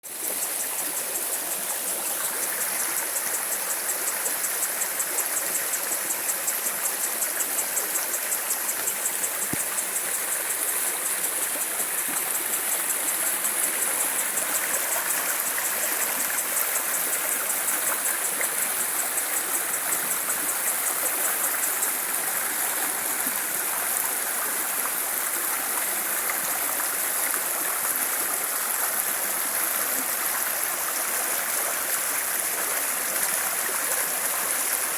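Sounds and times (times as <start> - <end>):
running water rushing: 0.0 - 34.9.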